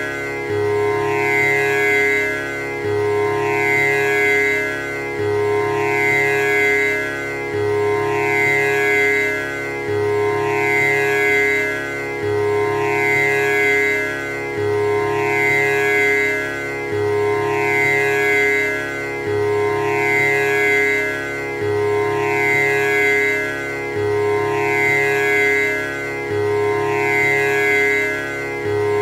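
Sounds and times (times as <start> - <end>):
tanpura drone: 0.0 - 29.0.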